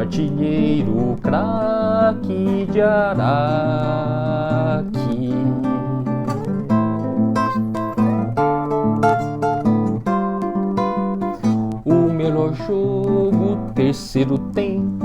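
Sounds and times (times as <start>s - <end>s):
man singing: 0.0s - 7.4s, 11.5s - 15.0s
acoustic guitar strumming: 0.0s - 15.0s.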